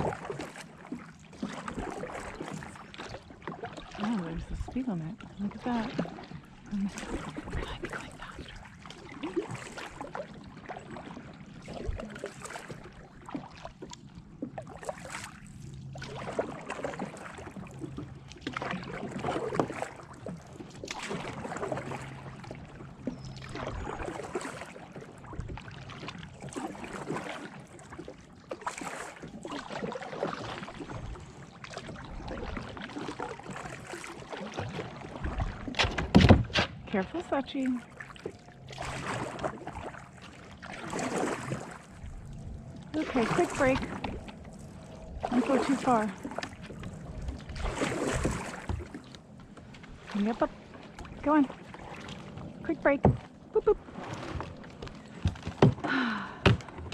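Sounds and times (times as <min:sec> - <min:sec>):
kayak paddle splashing water: 0:00.0 - 0:56.9.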